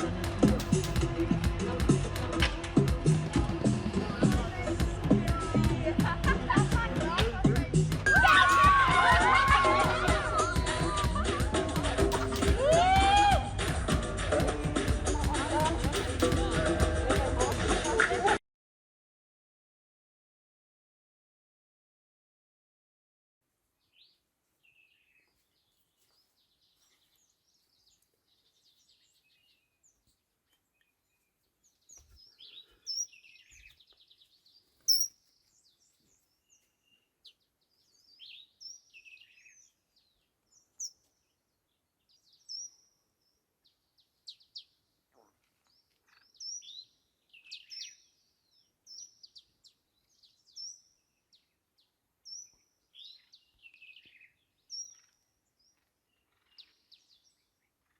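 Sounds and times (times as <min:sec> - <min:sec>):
birds chirping: 0:00.0 - 0:12.6, 0:23.9 - 0:57.9
bird trill: 0:08.0 - 0:09.2, 0:32.3 - 0:33.7, 0:34.8 - 0:35.3.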